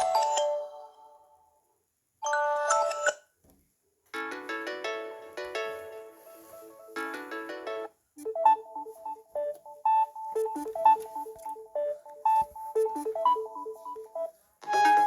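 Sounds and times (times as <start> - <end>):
electronic ringtone melody: 4.2 - 15.0
simple ringtone melody: 4.2 - 15.0.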